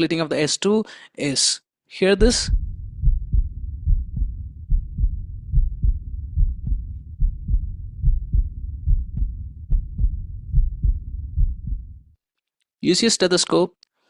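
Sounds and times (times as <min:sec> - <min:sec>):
heartbeat through stethoscope: 0:02.2 - 0:12.1.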